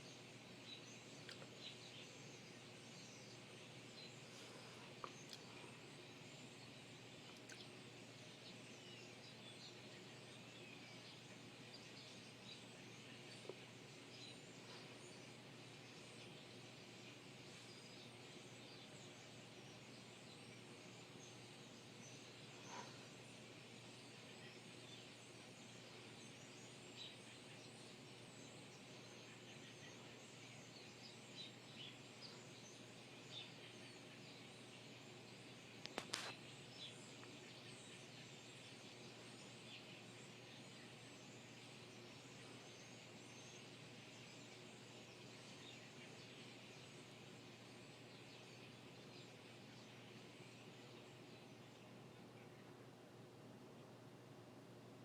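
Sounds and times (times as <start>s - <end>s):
bird chirps: 0.0s - 52.9s
steady background hiss: 0.0s - 55.0s.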